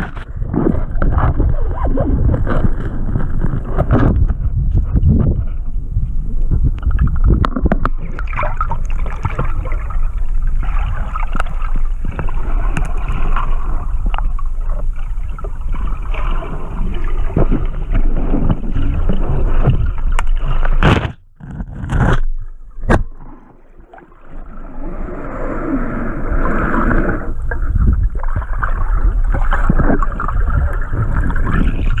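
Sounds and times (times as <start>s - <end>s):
water gurgling and rushing: 0.0s - 21.1s, 22.4s - 32.0s
knocks and scrapes: 17.3s - 23.6s.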